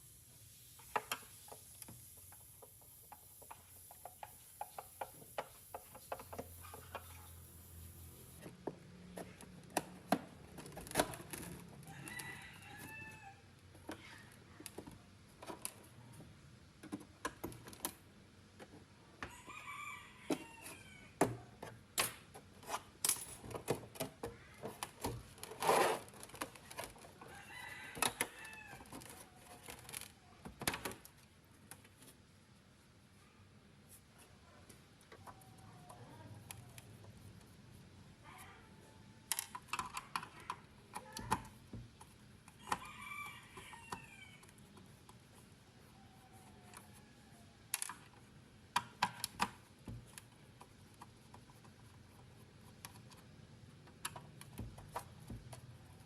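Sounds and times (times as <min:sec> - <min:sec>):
sharp clicks and knocks: 0:00.8 - 0:07.4
rooster crowing: 0:11.8 - 0:13.5, 0:19.2 - 0:21.2, 0:27.3 - 0:28.9, 0:42.6 - 0:44.4.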